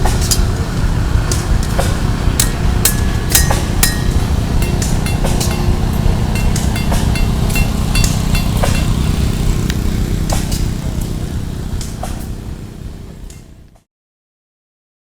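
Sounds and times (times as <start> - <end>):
low engine rumble: 0.0 - 13.9
hammer striking anvil: 1.3 - 11.2.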